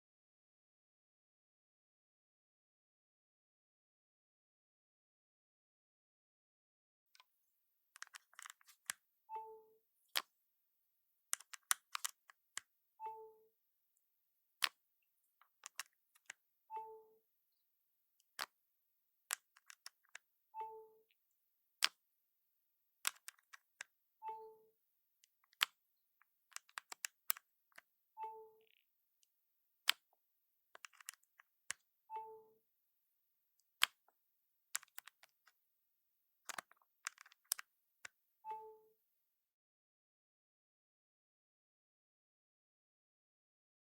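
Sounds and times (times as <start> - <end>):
cable plugging into phone clicks: 8.0 - 9.0, 11.3 - 12.7, 15.5 - 17.0, 18.2 - 18.6, 19.3 - 20.8, 21.8 - 22.0, 23.0 - 24.5, 25.2 - 25.8, 26.5 - 28.4, 29.8 - 30.0, 30.8 - 32.4, 33.6 - 34.1, 34.7 - 35.6, 36.5 - 38.7.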